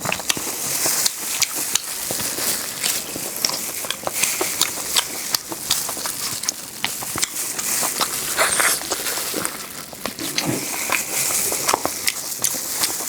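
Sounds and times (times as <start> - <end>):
chewing with crackles: 0.0 - 13.0
wet mouth clicks: 2.8 - 9.0, 10.0 - 13.0.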